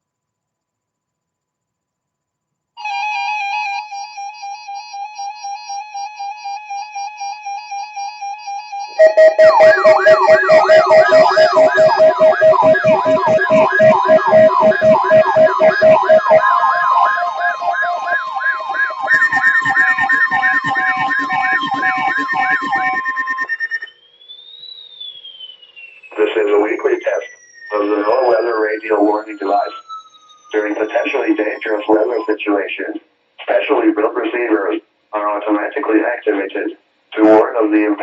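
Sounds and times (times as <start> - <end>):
pulsing low alarm tones: 2.8 - 32.4
rising and falling siren glide: 2.8 - 32.4
steady high alarm tones: 2.8 - 32.6
electronic beeping tone: 5.2 - 32.4
yelping siren sweeps: 8.0 - 32.4.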